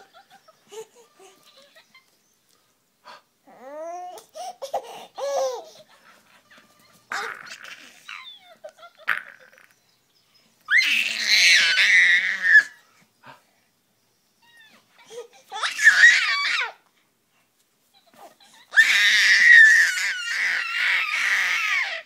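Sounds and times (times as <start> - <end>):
baby shrieking: 10.7 - 12.8, 15.5 - 16.8, 18.6 - 22.0.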